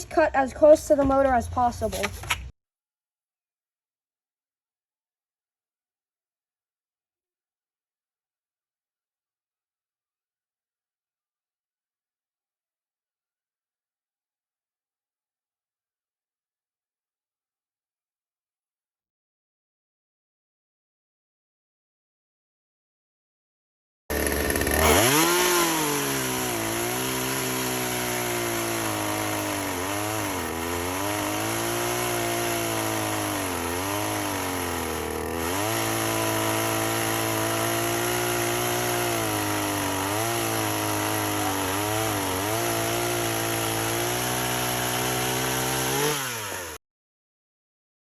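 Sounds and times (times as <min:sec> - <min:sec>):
chainsaw cutting wood: 0:24.1 - 0:46.8.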